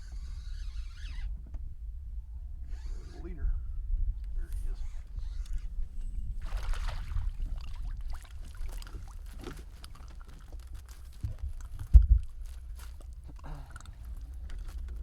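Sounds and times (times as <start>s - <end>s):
low steady rumble: 0.0s - 15.0s
water dripping: 6.4s - 15.0s
water splashing: 6.4s - 15.0s.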